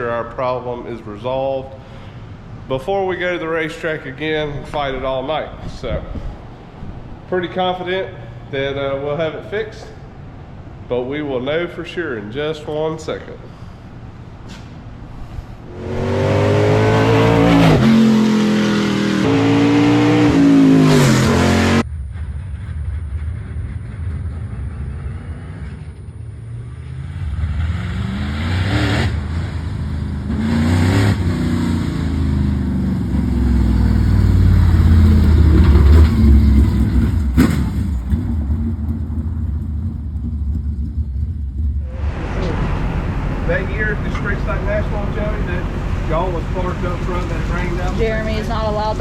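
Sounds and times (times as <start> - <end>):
race car engine revving: 15.6 - 21.9, 22.6 - 49.0
loud low rumble: 21.4 - 27.4, 32.0 - 49.0.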